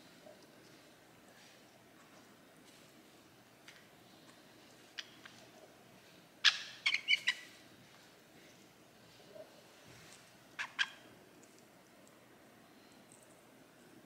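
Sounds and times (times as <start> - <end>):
parrot squeaky chirps: 6.4 - 7.4, 10.6 - 11.0.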